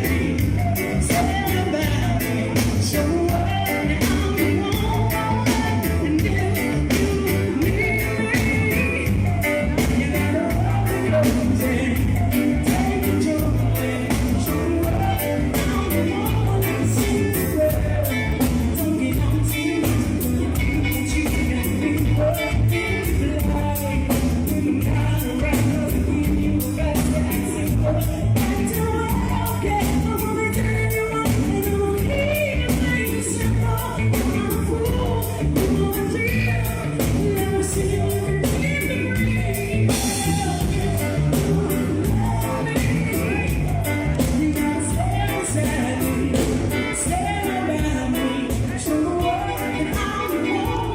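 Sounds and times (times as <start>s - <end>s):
lead vocal singing: 0.0s - 50.9s
reggae band playing: 0.0s - 50.9s.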